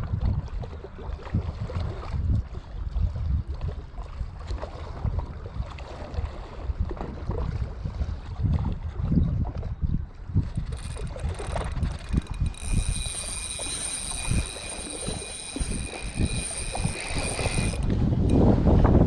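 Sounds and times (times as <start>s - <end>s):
faint ticks and splashes: 0.0s - 18.4s
wind buffeting microphone: 0.0s - 19.0s.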